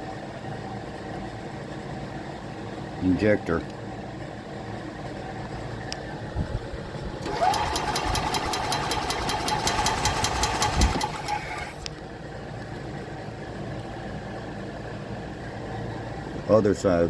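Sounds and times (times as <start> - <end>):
starter motor cranking engine: 7.2 - 11.9.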